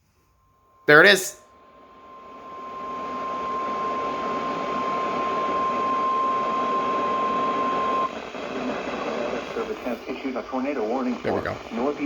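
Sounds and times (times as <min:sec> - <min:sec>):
steady alarm beep: 0:00.5 - 0:08.1
radio static hiss: 0:00.9 - 0:12.0.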